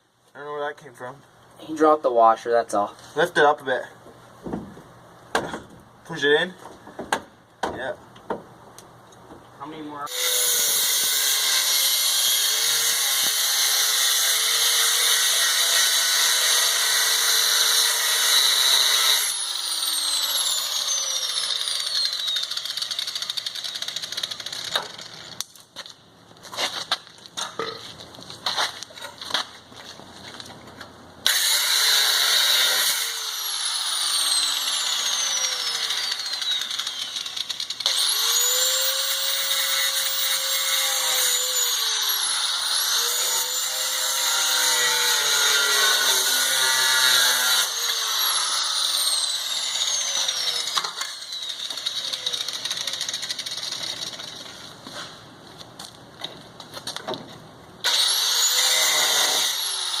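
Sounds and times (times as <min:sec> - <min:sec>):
angle grinder cutting steel: 0:10.1 - 0:25.4, 0:31.2 - 0:54.5, 0:57.8 - 1:00.0.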